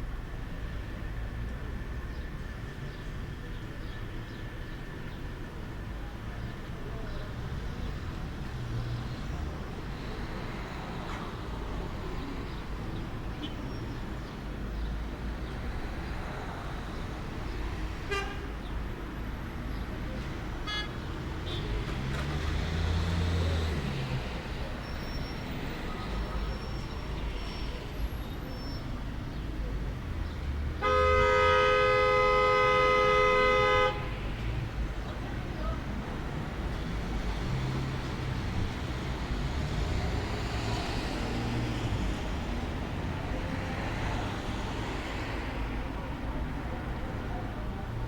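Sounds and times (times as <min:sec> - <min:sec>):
distant road traffic rumble: 0:00.0 - 0:48.0.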